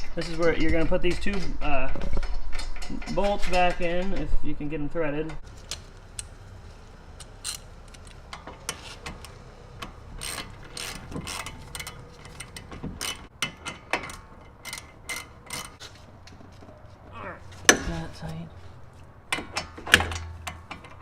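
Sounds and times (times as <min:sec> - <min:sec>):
socket ratchet clicking: 0:09.8 - 0:15.8.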